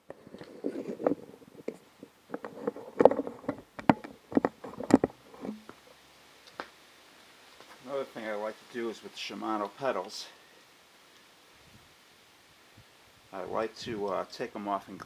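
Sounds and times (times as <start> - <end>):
objects being handled: 0.0 - 6.8.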